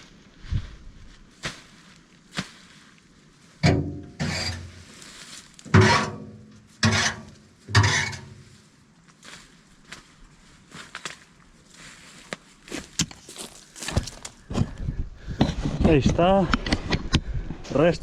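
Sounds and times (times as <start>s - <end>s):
knocks and scrapes: 3.6s - 8.6s, 12.9s - 17.8s.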